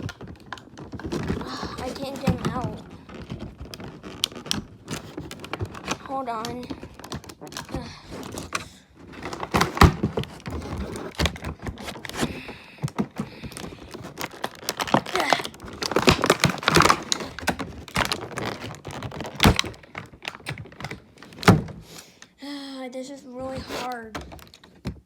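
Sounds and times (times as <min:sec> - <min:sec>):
plastic packaging clicking: 0:00.0 - 0:22.3, 0:23.9 - 0:25.0.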